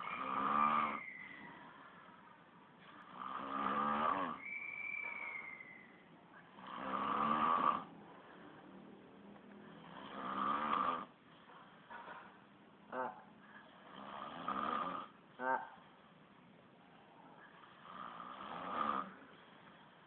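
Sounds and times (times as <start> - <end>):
man snoring: 0.0 - 1.1, 3.1 - 4.4, 6.5 - 8.3, 9.7 - 11.1, 13.8 - 15.2, 17.6 - 19.3
thin whistling tone: 0.0 - 1.8, 4.3 - 6.1.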